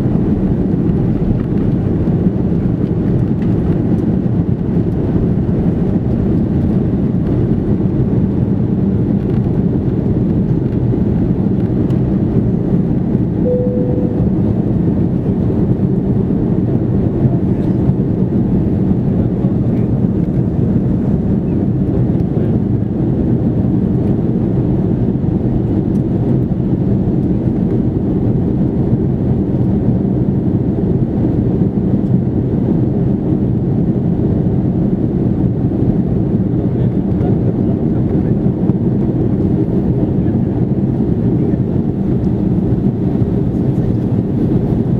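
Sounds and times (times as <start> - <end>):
aircraft cabin rumble: 0.0 - 44.9
brief tone: 13.4 - 14.7.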